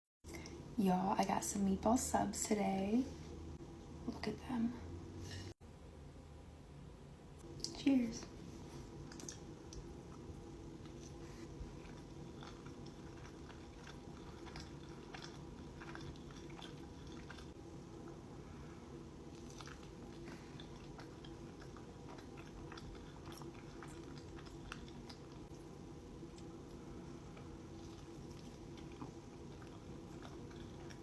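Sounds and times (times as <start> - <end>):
person chewing food: 8.8 - 18.6, 19.2 - 31.0.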